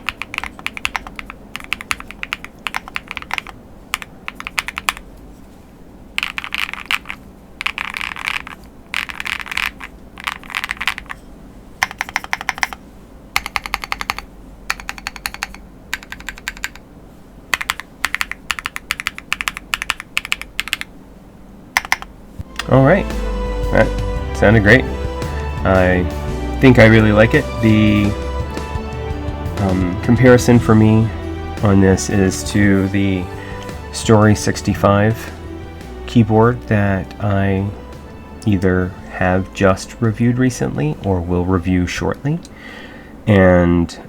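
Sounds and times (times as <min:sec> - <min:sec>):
mechanical keyboard typing: 0:00.0 - 0:05.0, 0:06.2 - 0:11.2, 0:11.8 - 0:12.8, 0:13.4 - 0:16.8, 0:17.5 - 0:20.9, 0:21.8 - 0:22.1.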